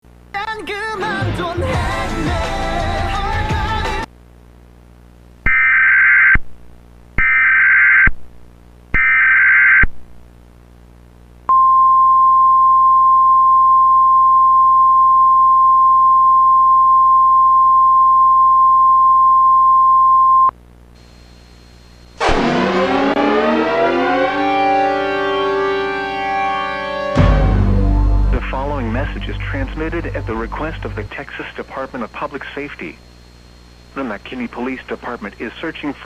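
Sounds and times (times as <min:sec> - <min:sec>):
siren rising in pitch: 0:22.2 - 0:31.1
steady alert tone: 0:22.2 - 0:31.1
data warble bursts: 0:28.3 - 0:32.6.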